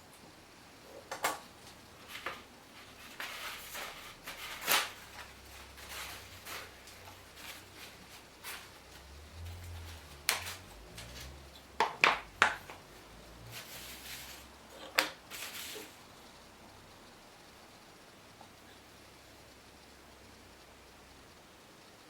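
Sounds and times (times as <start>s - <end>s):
faint low hum: 0.0s - 22.0s
hard objects knocking: 11.8s - 12.9s.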